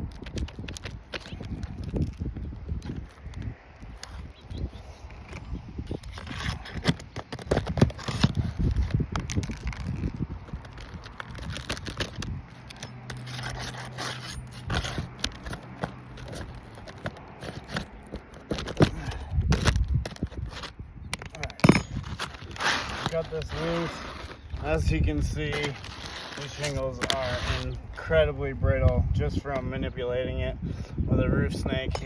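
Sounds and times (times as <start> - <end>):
scraping under asphalt shingles: 0.0 - 32.0
shingles cracking: 5.1 - 28.0.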